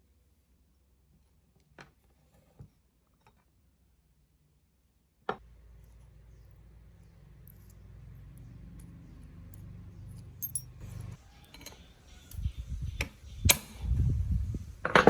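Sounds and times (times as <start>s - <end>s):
small metallic clinks: 5.8s - 12.5s.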